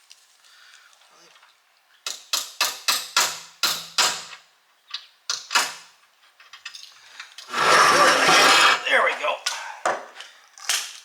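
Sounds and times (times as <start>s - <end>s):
loud rough noise: 7.5s - 8.9s.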